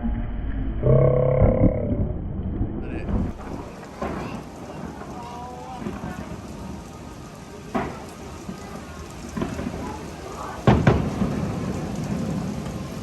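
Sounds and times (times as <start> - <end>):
thunder claps: 1.5 - 13.0
steady rain: 2.8 - 13.0.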